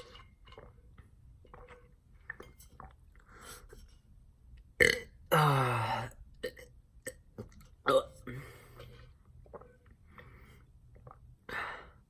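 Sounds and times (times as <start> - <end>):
man burping: 4.8 - 6.7, 7.9 - 8.6.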